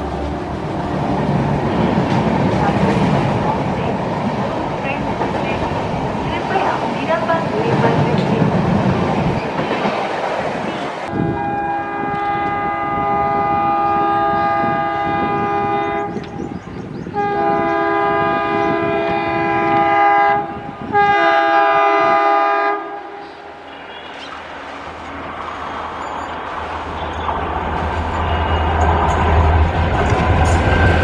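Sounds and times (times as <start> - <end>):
train wheels rattling over track: 0.0 - 11.1, 24.1 - 31.0
locomotive air horn chord: 11.1 - 16.2, 17.2 - 23.2.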